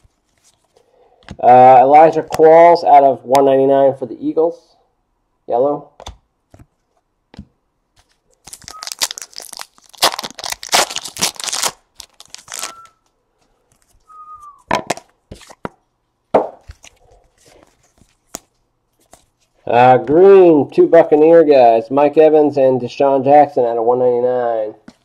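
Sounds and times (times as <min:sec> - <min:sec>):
foil wrapper tearing: 0:08.0 - 0:13.0.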